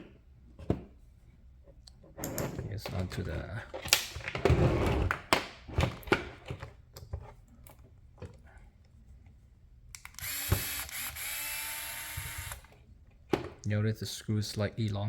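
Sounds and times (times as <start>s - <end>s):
electric screwdriver whining: 10.0s - 12.8s.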